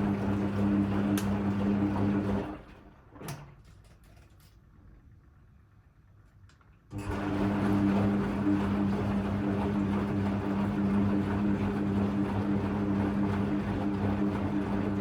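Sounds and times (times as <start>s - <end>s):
washing machine motor hum: 0.0s - 3.1s, 6.9s - 15.0s.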